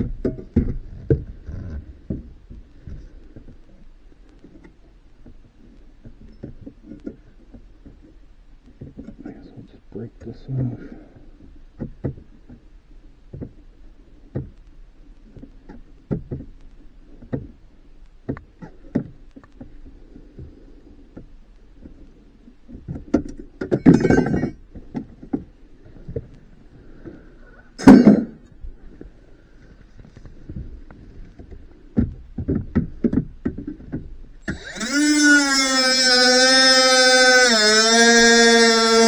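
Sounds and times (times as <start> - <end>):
clattering parts: 23.7 - 24.6, 34.5 - 39.0.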